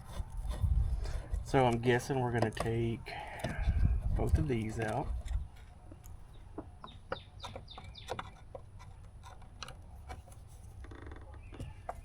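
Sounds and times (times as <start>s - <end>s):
bird chirping: 6.3s - 8.4s, 11.3s - 12.0s.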